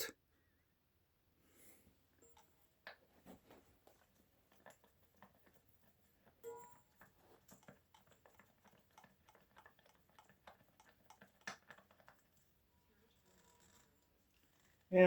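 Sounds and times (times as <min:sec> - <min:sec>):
ringing metal clink: 0:06.4 - 0:06.8.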